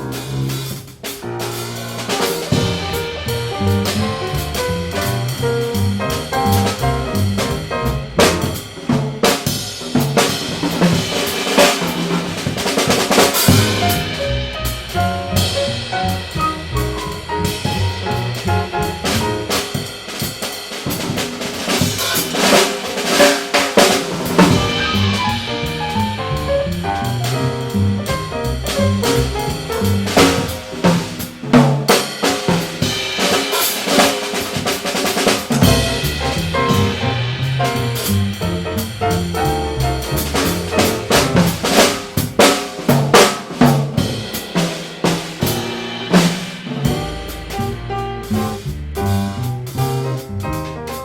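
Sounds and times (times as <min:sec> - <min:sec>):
jazz drum kit playing: 0:00.0 - 0:51.0
horn line: 0:24.4 - 0:25.6.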